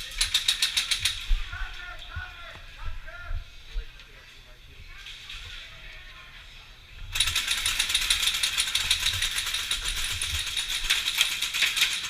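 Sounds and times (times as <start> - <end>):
rapid mechanical clicking: 0.0 - 1.3, 7.1 - 12.0.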